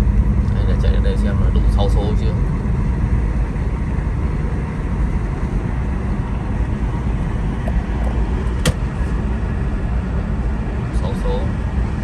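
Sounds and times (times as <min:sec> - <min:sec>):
car engine and road rumble: 0:00.0 - 0:12.0
sharp click: 0:08.5 - 0:09.0.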